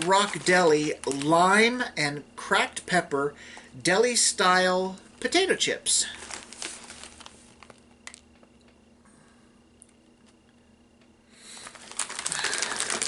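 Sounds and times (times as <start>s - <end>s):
chip bag crinkling: 0.0s - 1.9s, 5.5s - 8.5s, 11.5s - 13.0s.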